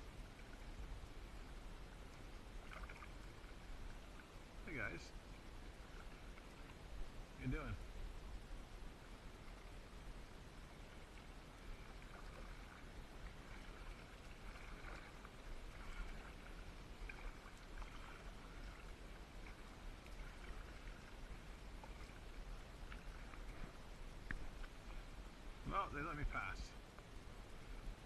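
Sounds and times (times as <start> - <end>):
kayak paddle splashing water: 2.1 - 4.3, 10.9 - 25.2.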